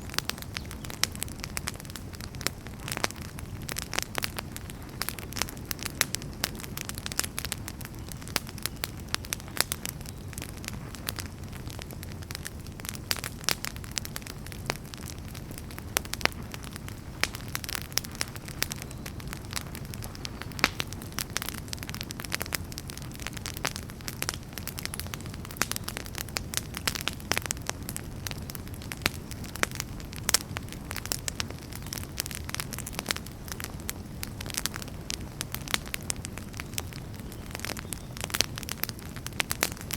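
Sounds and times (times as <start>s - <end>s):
burning wood popping and snapping: 0.0s - 39.9s
low rumble of flames: 0.0s - 39.9s.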